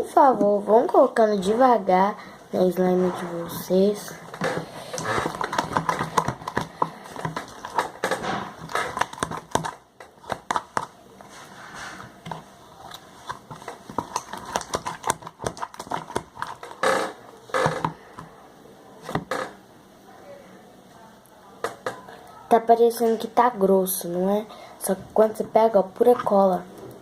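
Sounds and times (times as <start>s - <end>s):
sticky clicks of stirred slime: 12.2s - 16.8s.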